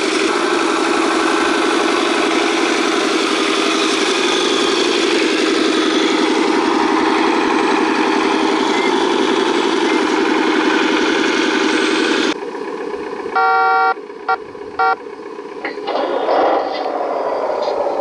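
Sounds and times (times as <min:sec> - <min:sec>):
toy truck engine running: 0:00.0 - 0:18.0
horn blasts: 0:13.4 - 0:15.0.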